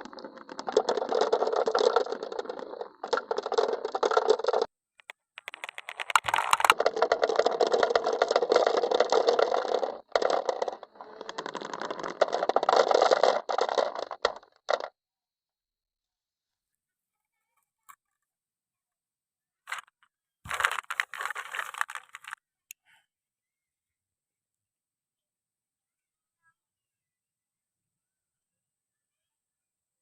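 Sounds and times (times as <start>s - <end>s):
marbles rattling down wooden run: 0.0s - 14.9s, 19.7s - 19.9s, 20.5s - 22.4s.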